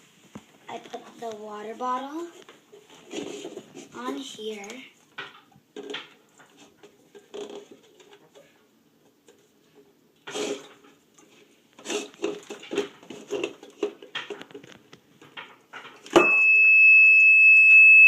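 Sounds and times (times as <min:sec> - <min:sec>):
objects knocking and clattering: 0:05.1 - 0:16.3
alarm buzzer high-pitched tone: 0:16.2 - 0:18.0.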